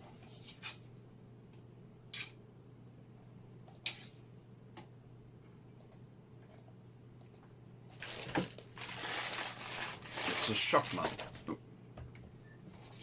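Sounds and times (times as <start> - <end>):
handling and rustling: 8.0 - 11.5.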